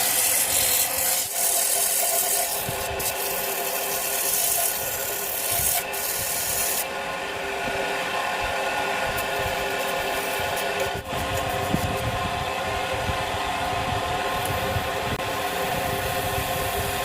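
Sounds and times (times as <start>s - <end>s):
abrasive scraping spinning wood: 0.0s - 6.9s
wood lathe humming: 0.0s - 17.0s.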